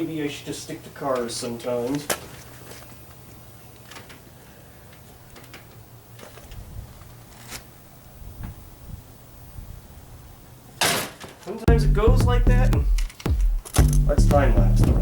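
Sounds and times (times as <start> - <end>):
steady low hum: 11.7 - 15.0.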